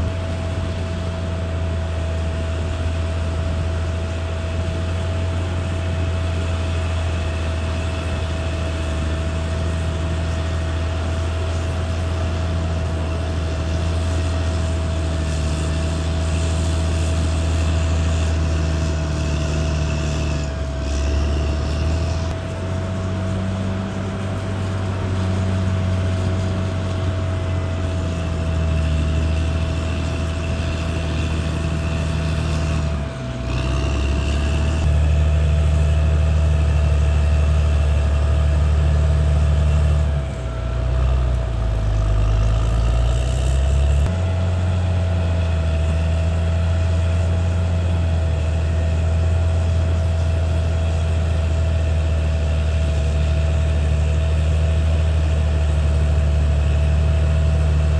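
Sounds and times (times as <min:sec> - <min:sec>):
bulldozer diesel engine whining: 0:00.0 - 0:57.9.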